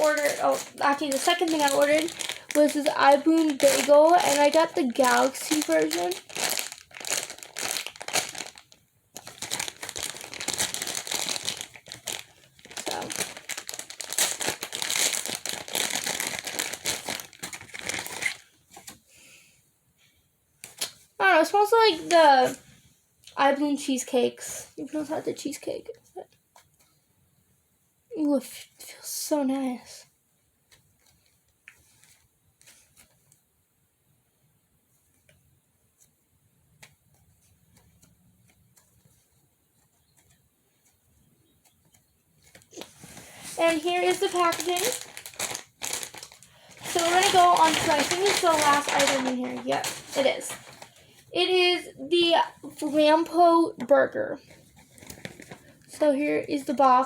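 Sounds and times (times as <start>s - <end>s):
plastic packaging crinkling: 0.0s - 19.0s, 30.7s - 33.4s, 41.6s - 51.5s, 54.4s - 57.0s.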